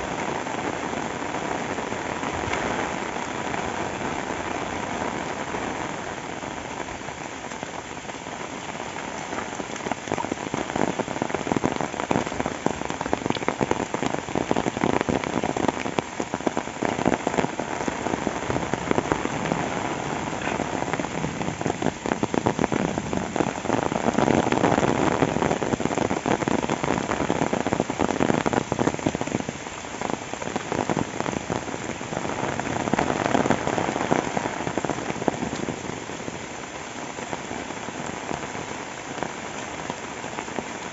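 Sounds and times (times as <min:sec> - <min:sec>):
heavy rain falling: 0:00.0 - 0:40.9.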